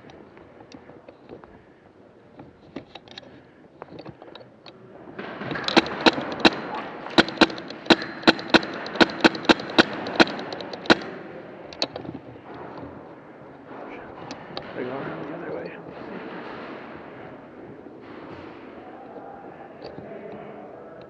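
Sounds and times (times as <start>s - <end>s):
airsoft gun shots: 5.2s - 11.2s.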